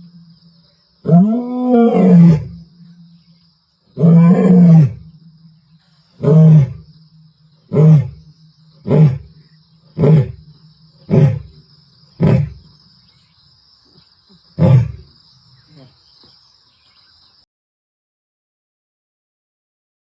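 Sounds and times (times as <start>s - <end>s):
lioness roaring: 1.0s - 2.6s, 4.0s - 5.1s, 6.1s - 6.9s, 7.7s - 9.3s, 10.0s - 11.6s, 12.2s - 12.7s, 14.6s - 15.1s.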